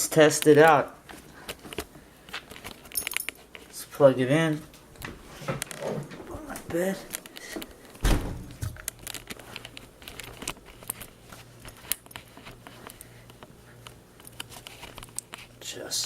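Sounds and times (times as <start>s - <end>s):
rustling and crinkling: 1.0s - 16.0s
heavy thump: 8.0s - 8.6s.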